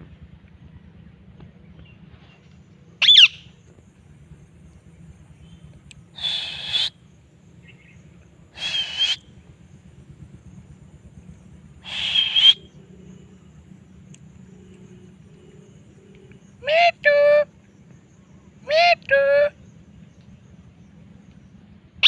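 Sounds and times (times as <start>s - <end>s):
parrot calling: 3.0s - 3.4s, 6.2s - 7.0s, 8.6s - 9.2s, 11.8s - 12.7s.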